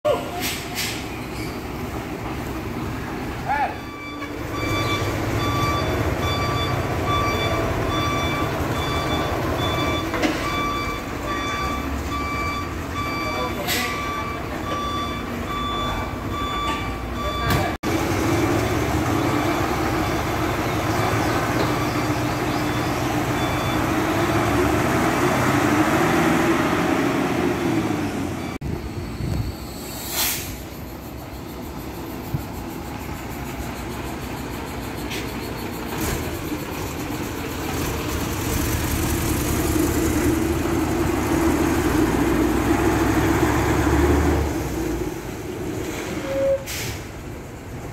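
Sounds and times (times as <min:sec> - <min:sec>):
reversing beeper: 0:03.5 - 0:17.8, 0:19.0 - 0:25.3
diesel engine running: 0:17.8 - 0:29.6, 0:30.7 - 0:46.0.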